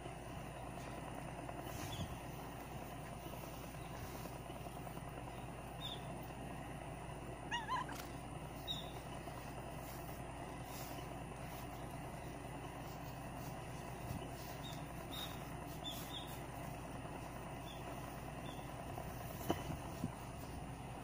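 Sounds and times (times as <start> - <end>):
low background rumble: 0.0 - 21.0
cat meowing: 7.5 - 8.0.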